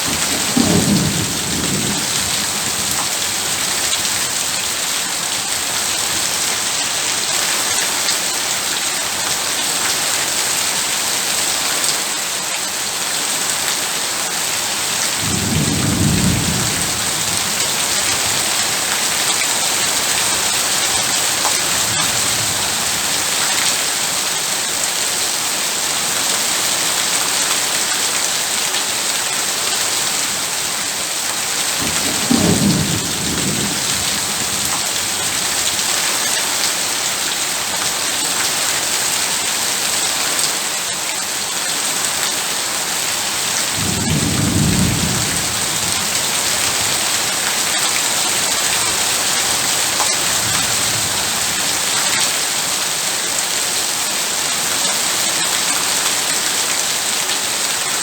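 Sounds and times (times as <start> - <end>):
thunder rumbling: 0.0 - 4.4, 15.2 - 18.8, 31.8 - 35.8, 43.7 - 47.3
heavy rain: 0.0 - 58.0.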